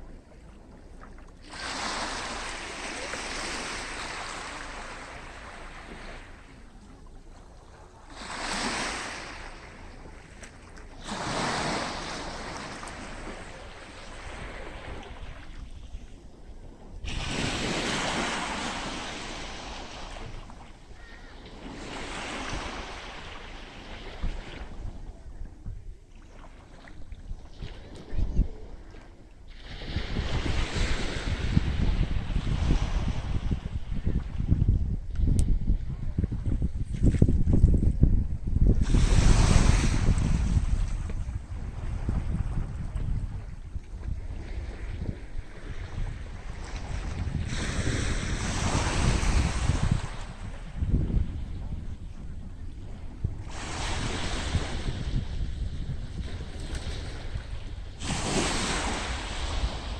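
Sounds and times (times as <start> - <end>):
sea waves washing onto beach: 1.3 - 6.7, 7.9 - 15.6, 53.2 - 59.9
wind buffeting microphone: 29.6 - 59.9.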